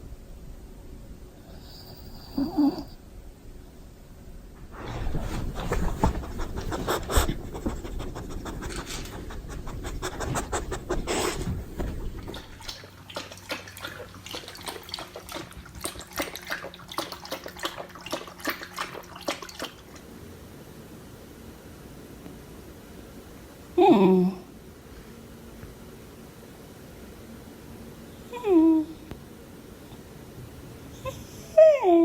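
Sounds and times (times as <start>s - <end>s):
dog panting: 4.8s - 19.7s.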